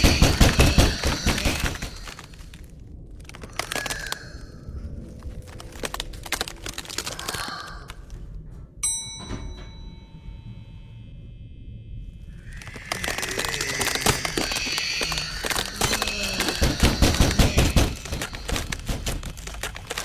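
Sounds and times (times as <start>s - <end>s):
sound-effect thuds and clicks: 0.0s - 2.6s, 12.8s - 20.0s
bell-like ding: 8.8s - 10.7s.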